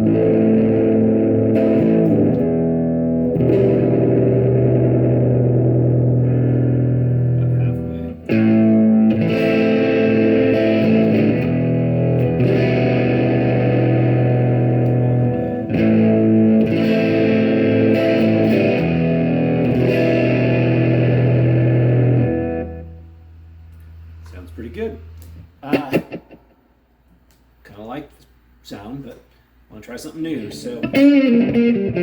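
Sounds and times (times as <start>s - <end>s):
electric guitar strummed chords: 0.0s - 26.5s, 30.7s - 32.0s.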